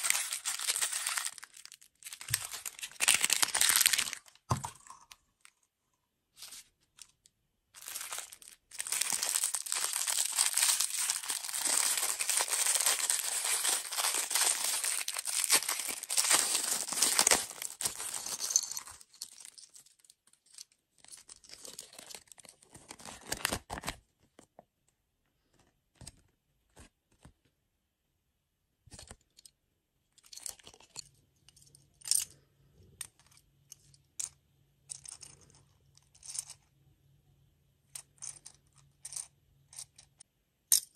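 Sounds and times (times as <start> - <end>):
food packaging crinkling: 0.0 - 4.5, 7.8 - 19.6.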